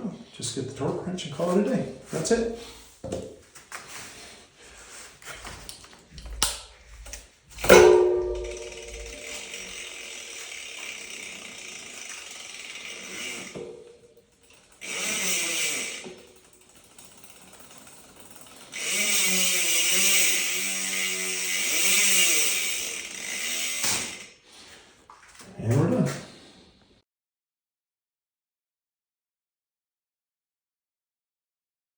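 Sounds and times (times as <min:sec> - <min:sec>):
bicycle hub ratchet buzz: 0:06.1 - 0:24.5.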